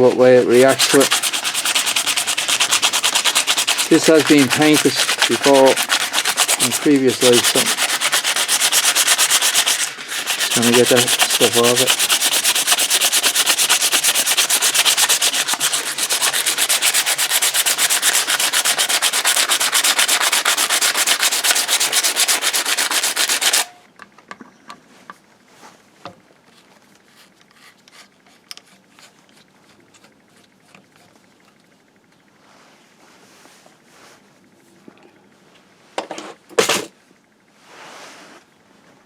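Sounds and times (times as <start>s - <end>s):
sandpaper scratching: 0.0s - 23.7s.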